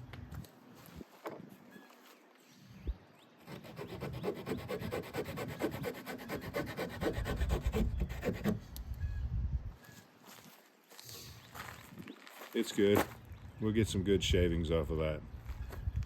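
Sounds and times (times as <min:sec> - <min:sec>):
saw rasping through branch: 0:03.4 - 0:08.6.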